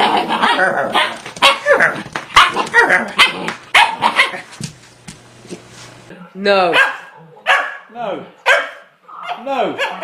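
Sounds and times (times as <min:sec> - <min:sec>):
dog barking and yowling: 0:00.3 - 0:04.5, 0:06.7 - 0:10.0.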